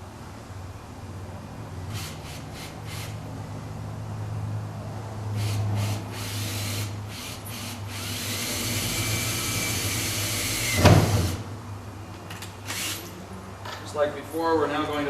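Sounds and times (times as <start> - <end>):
power drill boring through metal: 5.4 - 11.4.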